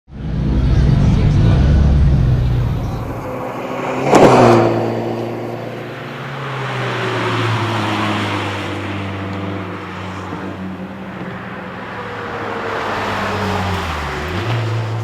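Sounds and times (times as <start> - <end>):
car engine running: 0.1 - 4.0
falling tone: 0.1 - 4.9.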